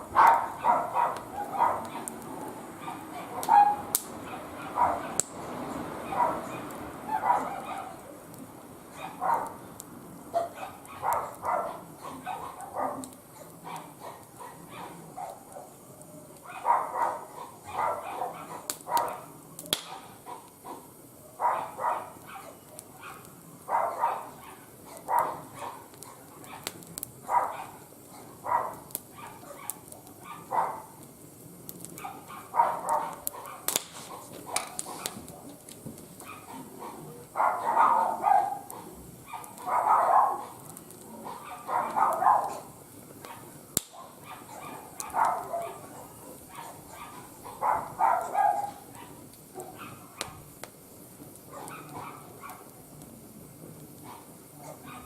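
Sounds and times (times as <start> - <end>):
fire crackling in a grill: 0.0 - 55.0
dog barking: 0.1 - 5.2, 6.0 - 8.0, 8.9 - 9.6, 10.3 - 15.8, 16.4 - 31.0, 32.0 - 35.5, 36.2 - 50.4, 51.5 - 52.7, 54.0 - 55.0.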